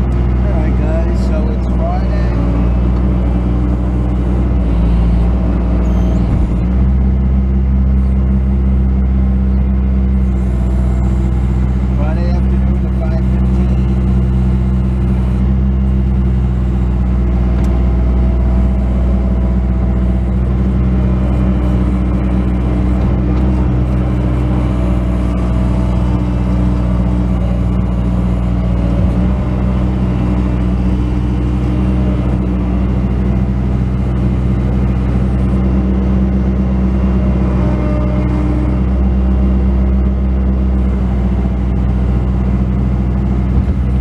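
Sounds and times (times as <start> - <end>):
loader diesel engine running: 0.0 - 44.0
faint whine shifting pitch: 5.8 - 6.7.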